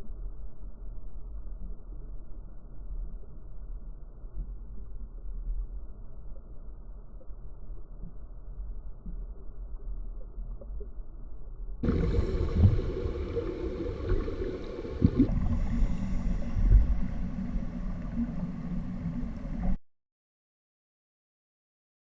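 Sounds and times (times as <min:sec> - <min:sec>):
underwater rumbling wash: 0:11.8 - 0:19.8
water gurgling: 0:11.8 - 0:19.8.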